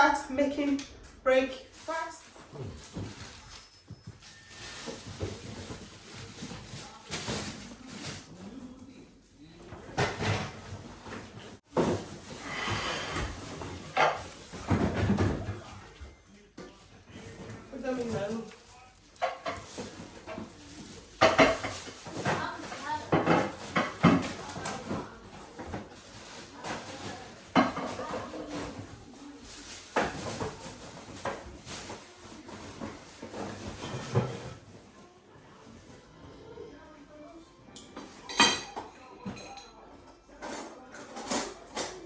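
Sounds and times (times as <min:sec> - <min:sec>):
grocery rustling: 0:01.3 - 0:08.8
dishes and utensils clattering: 0:09.6 - 0:35.1, 0:37.7 - 0:42.0.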